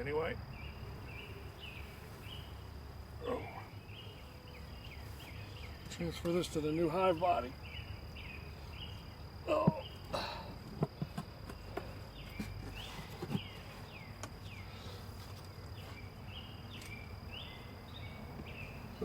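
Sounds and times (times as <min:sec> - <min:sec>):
honeybees buzzing: 0:00.4 - 0:10.1.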